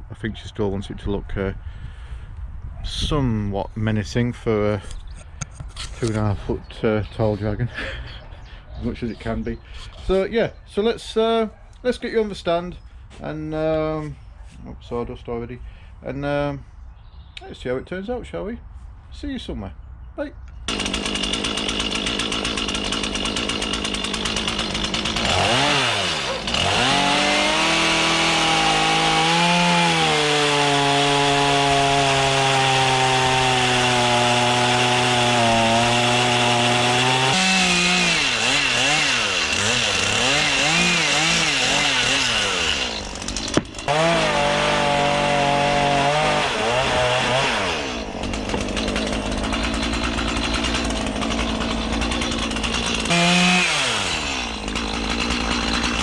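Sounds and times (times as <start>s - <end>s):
chainsaw cutting wood: 20.7s - 56.0s.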